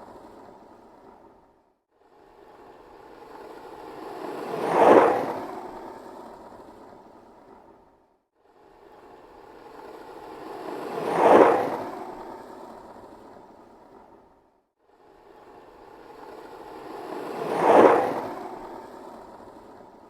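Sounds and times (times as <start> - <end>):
skateboard wheels rolling past: 2.6 - 7.8, 9.0 - 14.2, 15.4 - 20.0.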